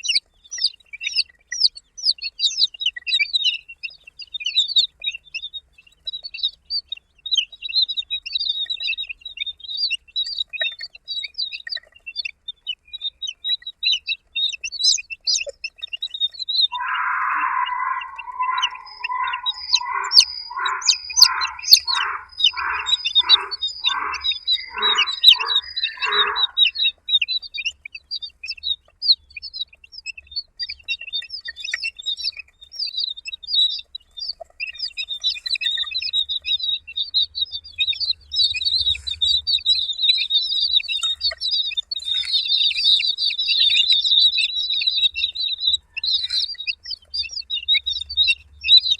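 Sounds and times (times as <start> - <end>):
baby chicks peeping: 0.0 - 48.9
lower bird call: 16.7 - 26.9.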